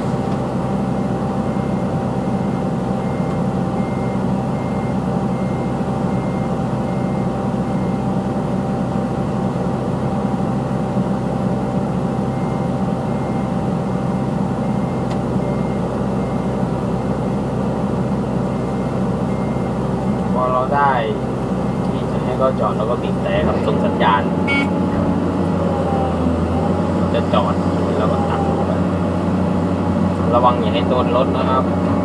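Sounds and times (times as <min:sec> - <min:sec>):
excavator diesel engine running: 0:00.0 - 0:32.0
reversing alarm beeping: 0:01.4 - 0:08.1, 0:12.3 - 0:17.2, 0:18.5 - 0:20.4, 0:23.4 - 0:29.0.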